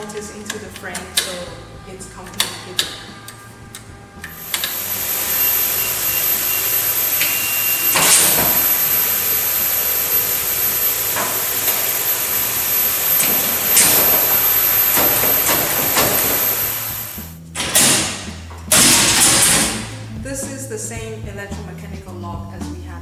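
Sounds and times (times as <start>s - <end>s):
steady loud hiss: 4.2s - 20.9s.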